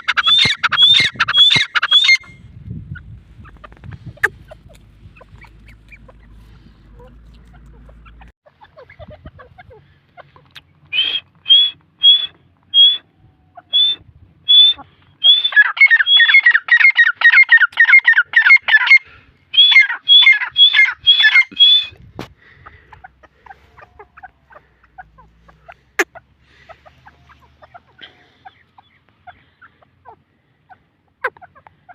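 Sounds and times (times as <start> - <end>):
francolin calling: 0.0 - 2.4, 10.9 - 31.6.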